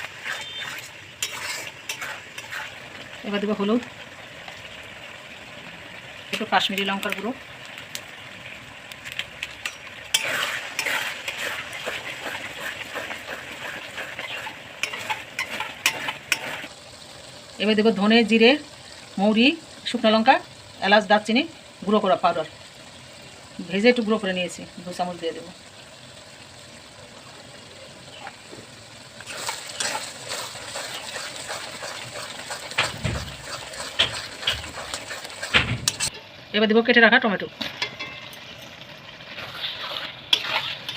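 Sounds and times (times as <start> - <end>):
spatula scraping a frying pan: 0.0 - 3.0, 9.6 - 16.7, 29.2 - 36.2, 39.3 - 40.9
food sizzling in oil: 0.0 - 40.9.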